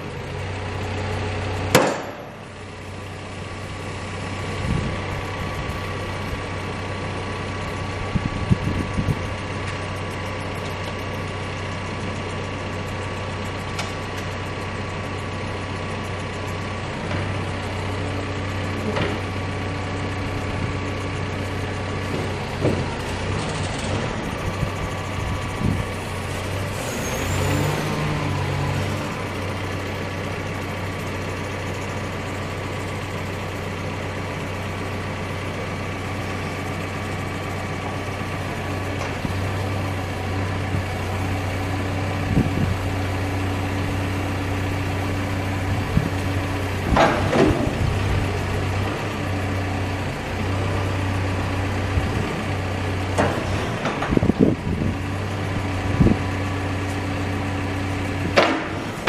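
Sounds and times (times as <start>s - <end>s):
diesel engine running: 0.0s - 59.0s
clunks and knocks of attachments: 18.8s - 19.3s, 22.0s - 24.0s, 46.8s - 47.9s, 53.1s - 54.5s, 58.2s - 59.0s.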